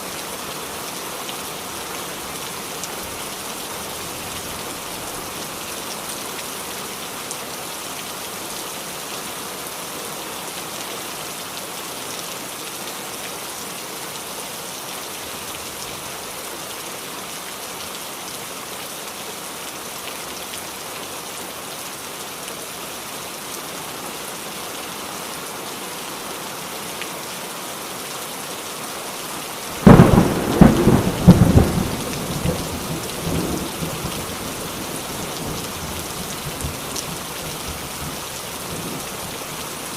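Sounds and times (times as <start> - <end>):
heavy rain: 0.0 - 39.9
thunder clap and rumble: 29.8 - 34.0.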